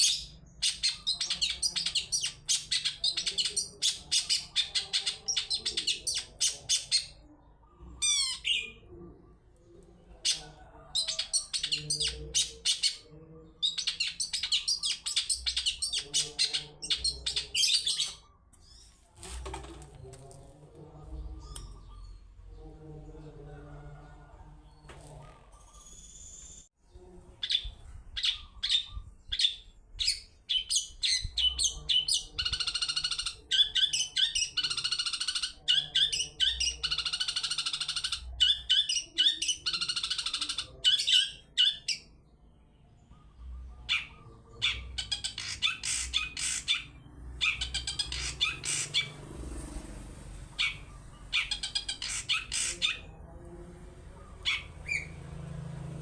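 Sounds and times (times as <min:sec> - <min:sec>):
bird chattering calls: 0:43.2 - 0:49.2, 0:50.5 - 0:53.2.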